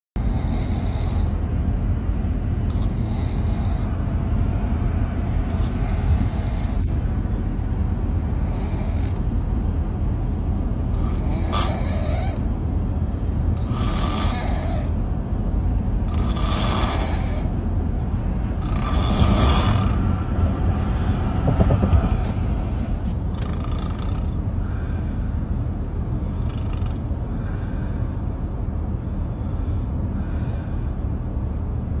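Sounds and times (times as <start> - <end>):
steady low rumble: 0.2 - 32.0
person snoring: 13.6 - 15.0, 16.0 - 17.5, 18.6 - 20.0.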